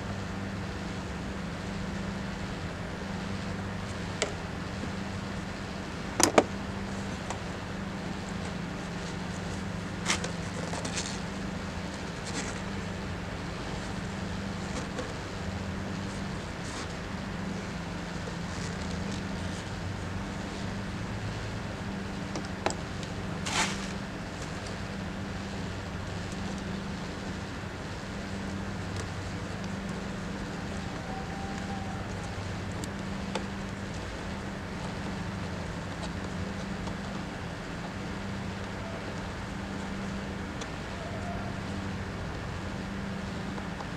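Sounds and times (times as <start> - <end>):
low mechanical hum: 0.0 - 43.9.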